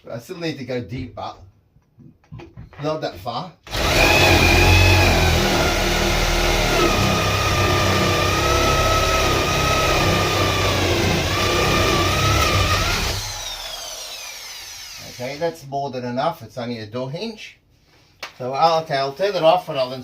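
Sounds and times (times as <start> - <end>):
electric drill boring into wood: 3.7 - 15.4.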